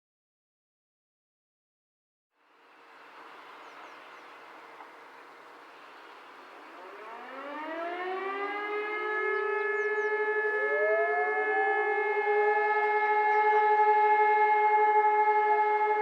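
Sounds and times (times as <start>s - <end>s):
motor sirens winding up and wailing: 5.6s - 16.0s.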